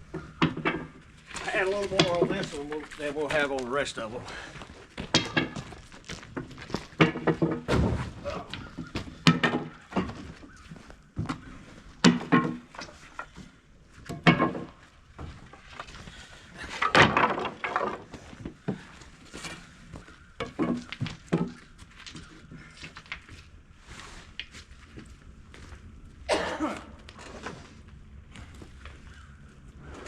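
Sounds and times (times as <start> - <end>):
wooden slabs knocking and scraping: 0.0 - 3.7, 4.9 - 23.4.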